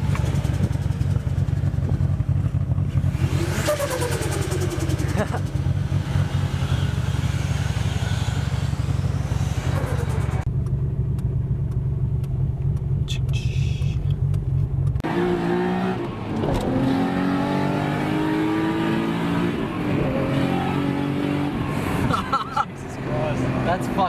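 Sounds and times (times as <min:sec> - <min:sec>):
car engine droning: 0:00.0 - 0:24.0
engine revving up: 0:02.9 - 0:10.5, 0:15.0 - 0:22.2.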